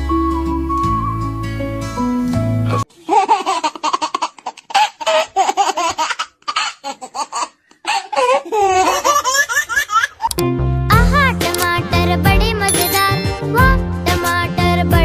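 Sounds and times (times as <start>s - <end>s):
cartoon voices laughing: 6.6s - 10.3s.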